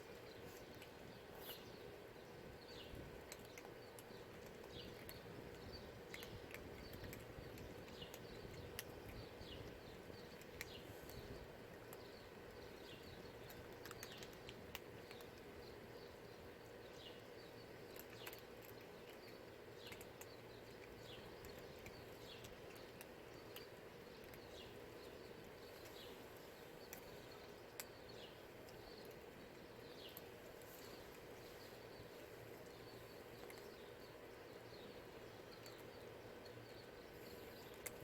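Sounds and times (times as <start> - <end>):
birds chirping: 0.0 - 38.0
cats chewing dry kibble: 0.0 - 38.0
low steady hum: 0.0 - 38.0.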